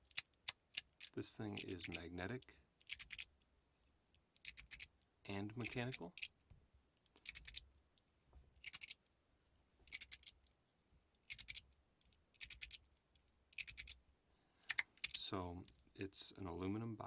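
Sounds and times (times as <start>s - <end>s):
metal fidget slider clicking: 0.0s - 2.1s, 2.8s - 3.3s, 4.4s - 4.9s, 5.6s - 6.3s, 7.2s - 7.6s, 8.6s - 9.0s, 9.9s - 10.3s, 11.2s - 11.6s, 12.4s - 12.8s, 13.6s - 14.0s, 14.7s - 15.2s.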